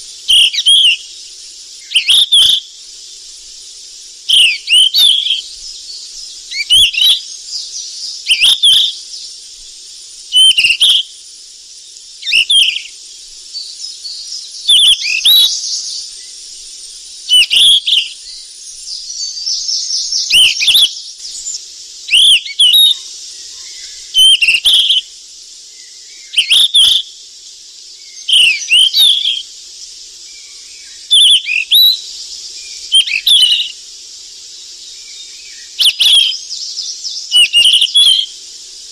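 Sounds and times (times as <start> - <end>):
steady high hiss: 0.0 - 38.9
bird singing whistled phrase: 0.3 - 1.0, 1.8 - 2.7, 4.3 - 5.5, 6.5 - 9.0, 10.3 - 11.1, 12.2 - 12.9, 14.6 - 16.0, 17.3 - 25.0, 25.9 - 27.1, 28.1 - 29.4, 31.1 - 32.0, 32.8 - 33.7, 35.5 - 38.3.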